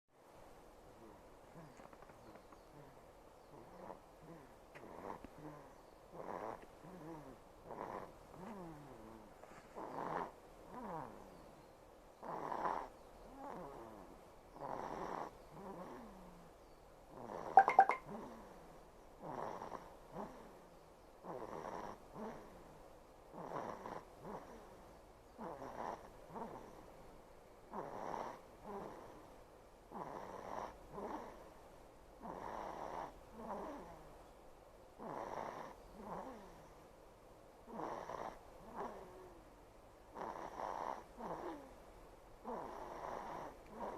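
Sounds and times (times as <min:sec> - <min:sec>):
baby snoring: 0:03.6 - 0:09.2, 0:09.8 - 0:11.2, 0:21.3 - 0:22.6, 0:23.3 - 0:24.8, 0:25.4 - 0:26.9, 0:27.7 - 0:29.3, 0:29.9 - 0:31.4, 0:32.2 - 0:34.0, 0:35.0 - 0:36.7, 0:37.7 - 0:39.4, 0:40.1 - 0:41.8, 0:42.4 - 0:43.9.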